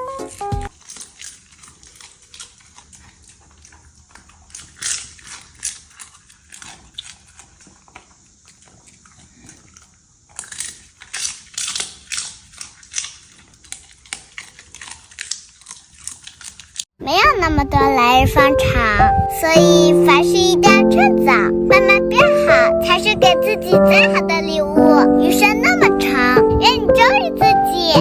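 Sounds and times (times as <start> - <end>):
dog crunching dried fish treats: 0.0 - 17.0.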